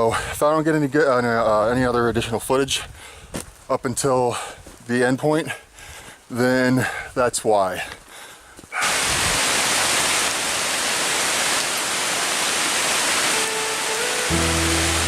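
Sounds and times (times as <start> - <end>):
steady rain falling: 7.9 - 15.0
background music: 13.3 - 15.0.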